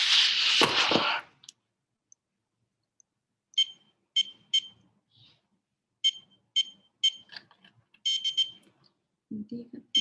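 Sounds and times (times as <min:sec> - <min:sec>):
keypad beeps: 0:08.0 - 0:08.6.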